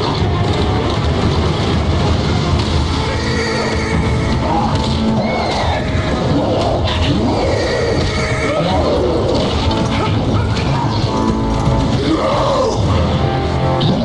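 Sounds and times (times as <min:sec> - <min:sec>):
music: 0:00.0 - 0:14.0
animal calling: 0:03.0 - 0:14.0.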